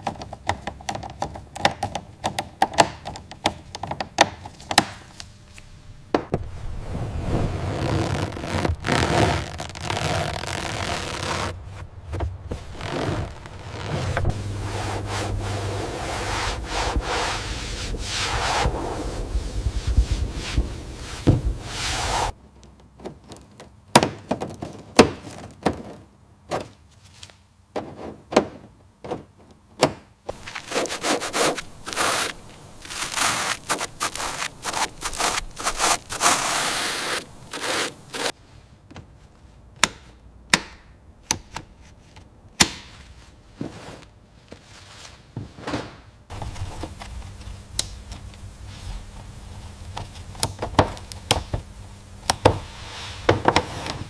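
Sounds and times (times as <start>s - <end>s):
hissing rubbing or scraping: 6.4s - 22.4s, 30.3s - 38.4s, 52.5s - 54.0s.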